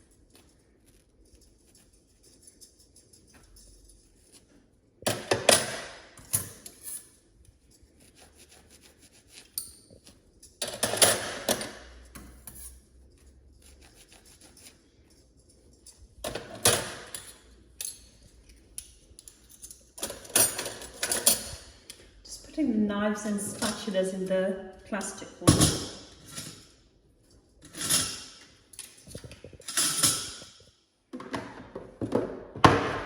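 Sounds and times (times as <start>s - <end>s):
metal cutlery clattering: 9.6s - 12.8s, 13.8s - 22.0s, 25.5s - 26.8s, 27.6s - 30.5s.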